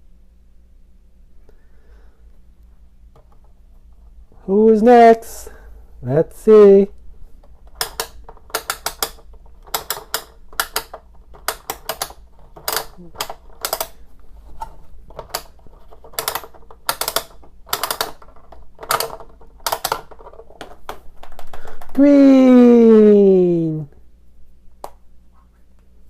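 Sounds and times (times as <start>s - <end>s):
plastic toy clicks and clatters: 7.6s - 14.0s, 15.2s - 22.0s.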